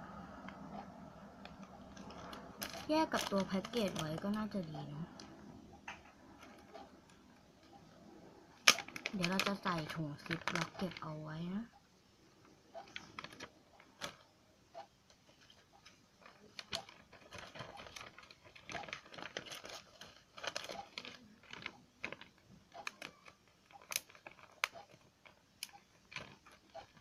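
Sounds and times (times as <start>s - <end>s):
plastic bag crinkling: 1.4s - 5.3s, 8.6s - 11.2s, 12.8s - 14.2s, 15.3s - 27.0s.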